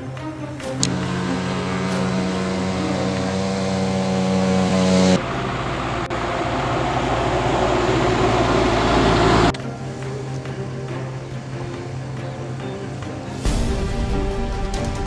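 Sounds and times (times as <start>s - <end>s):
vehicle engine running: 0.0s - 10.4s.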